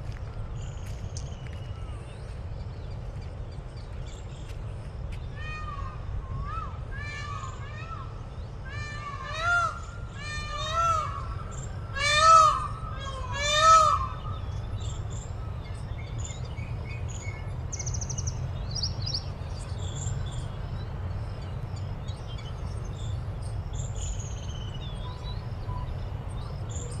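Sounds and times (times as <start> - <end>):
small birds chirping: 0.0 - 8.6, 13.1 - 27.0
steady low rumble: 0.0 - 27.0
peacock call: 8.7 - 14.4.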